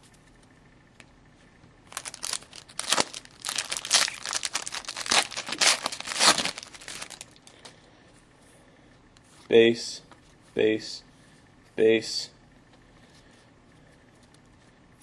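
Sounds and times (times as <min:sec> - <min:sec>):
foil wrapper tearing and crinkling: 0:01.9 - 0:07.5.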